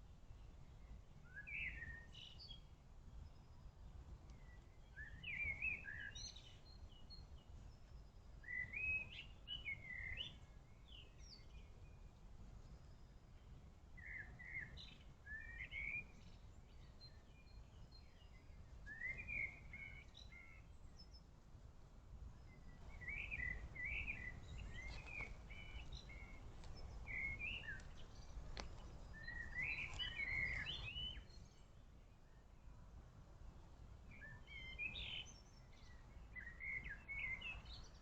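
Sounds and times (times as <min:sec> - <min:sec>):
songbirds chirping and singing: 0:14.0 - 0:21.3, 0:22.4 - 0:32.6, 0:34.1 - 0:38.0.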